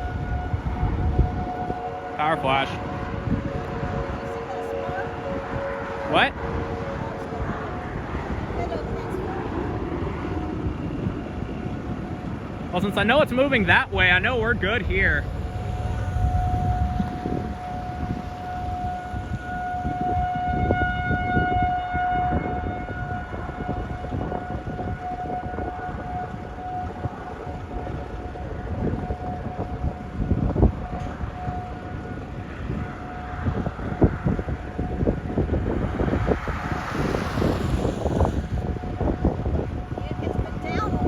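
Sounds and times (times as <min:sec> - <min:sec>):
warning siren: 0:00.0 - 0:41.0
wind buffeting microphone: 0:00.0 - 0:41.0.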